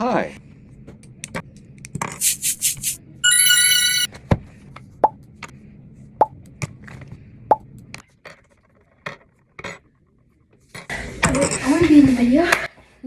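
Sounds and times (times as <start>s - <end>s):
mouth hissing tss sounds: 2.2s - 3.0s.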